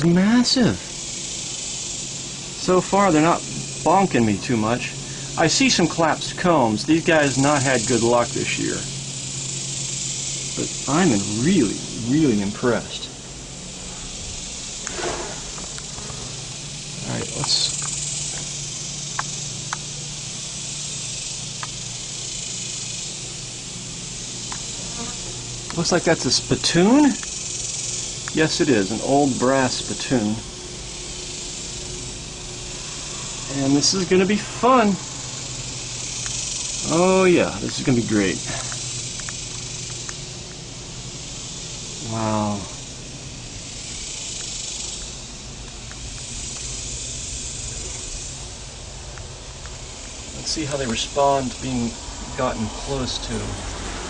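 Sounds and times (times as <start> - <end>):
honeybee colony buzzing: 0.0 - 54.0
single bees zipping past: 14.0 - 16.8, 24.6 - 25.7
faint ticks: 17.4 - 19.9, 21.5 - 21.9, 24.5 - 25.8, 35.6 - 36.9, 38.5 - 40.7, 43.6 - 51.0.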